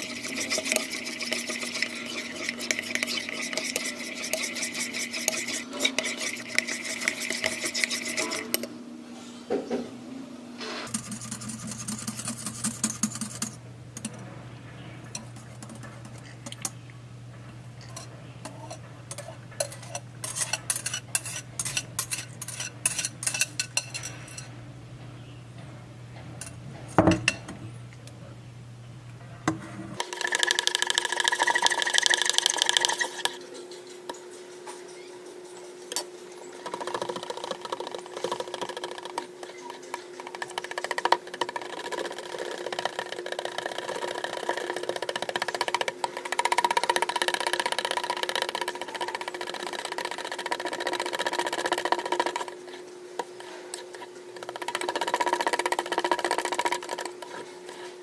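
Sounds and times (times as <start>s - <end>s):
utensil clinking: 0.0s - 8.8s, 10.9s - 27.6s
utensil scraping in a bowl: 0.0s - 9.8s, 10.6s - 16.8s, 17.6s - 24.7s, 29.5s - 58.0s
low steady hum: 0.0s - 30.0s.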